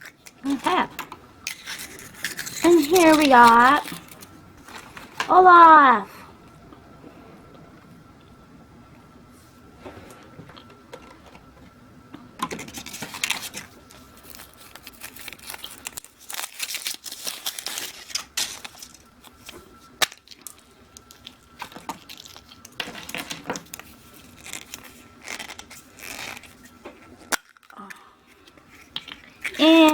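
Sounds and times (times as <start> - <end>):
foil wrapper crinkling and tearing: 1.5 - 5.3, 12.5 - 29.9.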